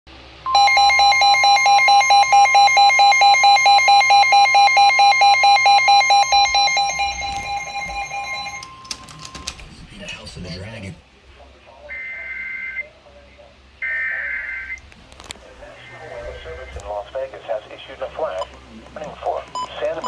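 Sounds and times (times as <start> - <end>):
harsh pulsed alarm beep: 0.5 - 9.4
steady warning alarm tone: 0.5 - 9.6, 11.9 - 12.9.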